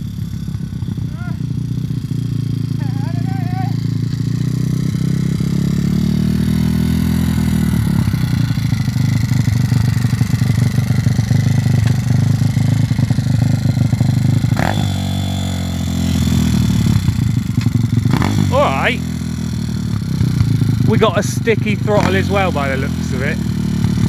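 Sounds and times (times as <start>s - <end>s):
motorbike engine revving: 0.9s - 24.0s
exhaust popping and crackling: 15.9s - 24.0s.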